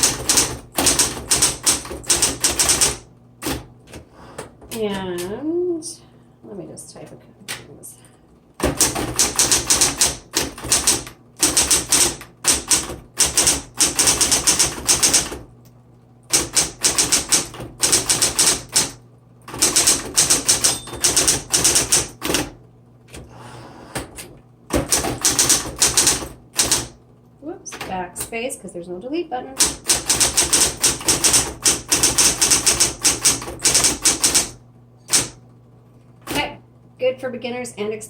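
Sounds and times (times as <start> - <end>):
electric typewriter key strikes: 0.0 - 3.7, 8.6 - 15.4, 16.3 - 22.6, 24.1 - 27.0, 29.6 - 35.4
typewriter motor hum: 0.0 - 5.3, 8.6 - 23.4, 24.0 - 27.0, 29.6 - 35.5.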